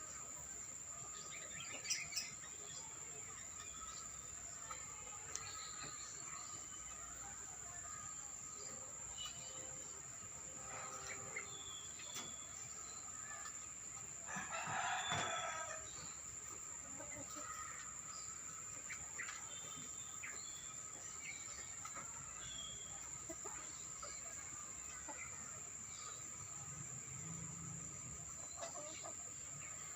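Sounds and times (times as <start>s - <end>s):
bird chirps: 8.6s - 13.5s
rooster crowing: 14.3s - 16.0s.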